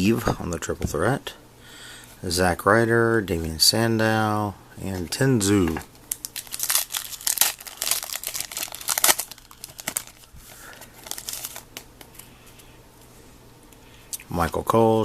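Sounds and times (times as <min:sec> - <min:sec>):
wrapper crinkling: 0:06.0 - 0:12.2.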